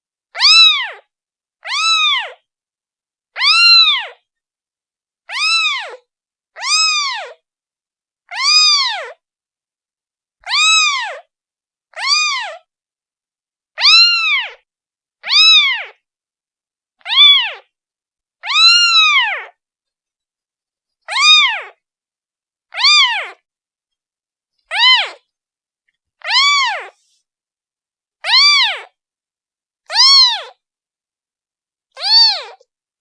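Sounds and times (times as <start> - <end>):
kitten meowing: 0.4 - 1.0, 1.6 - 2.4, 3.4 - 4.2, 5.3 - 6.0, 6.6 - 7.4, 8.3 - 9.2, 10.4 - 11.3, 11.9 - 12.7, 13.8 - 14.6, 15.2 - 16.0, 17.0 - 17.7, 18.4 - 19.6, 21.1 - 21.8, 22.7 - 23.4, 24.7 - 25.2, 26.2 - 27.1, 28.2 - 29.0, 29.9 - 30.6, 32.0 - 32.6.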